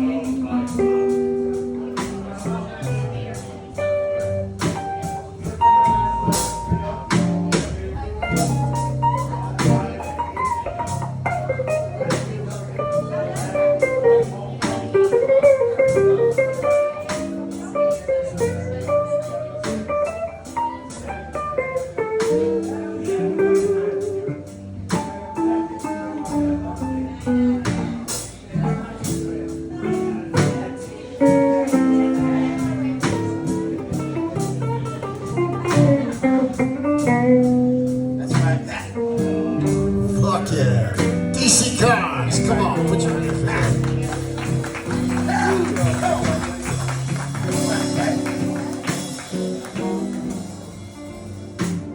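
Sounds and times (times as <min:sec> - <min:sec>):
drums: 0:00.0 - 0:51.9
electric guitar lead: 0:00.0 - 0:51.9
live blues band playing: 0:00.0 - 0:51.9
upright bass: 0:00.0 - 0:51.9.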